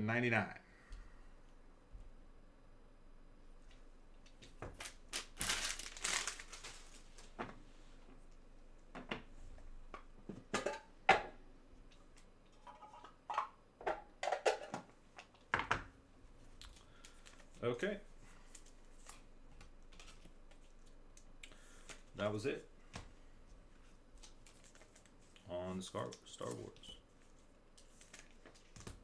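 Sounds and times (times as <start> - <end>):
plastic packaging crinkling: 4.6 - 7.4, 24.1 - 29.0.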